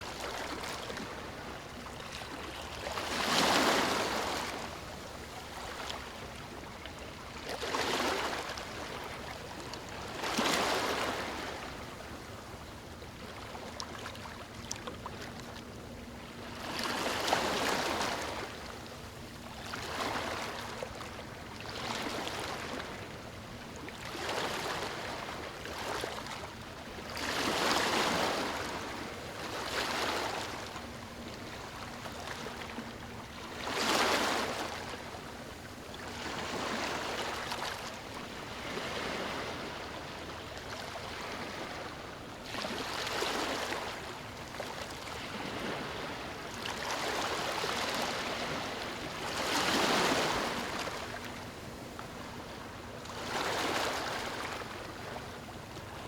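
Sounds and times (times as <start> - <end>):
ocean waves breaking: 0.1 - 4.8, 27.1 - 56.0.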